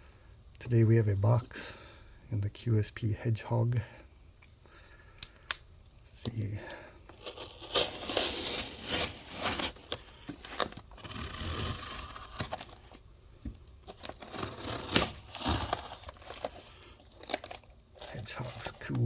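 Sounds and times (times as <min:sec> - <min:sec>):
packaging crinkling and tearing: 0:07.1 - 0:19.0.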